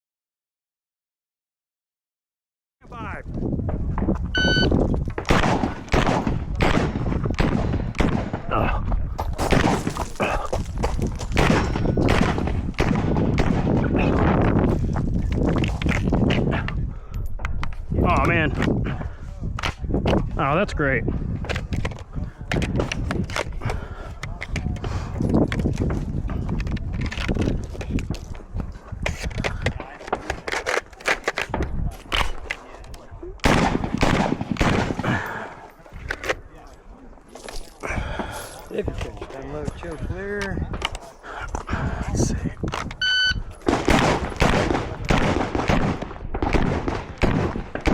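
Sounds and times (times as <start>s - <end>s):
rifle shots cracking: 5.3s - 8.5s, 11.3s - 14.1s, 33.4s - 35.3s, 43.6s - 47.9s.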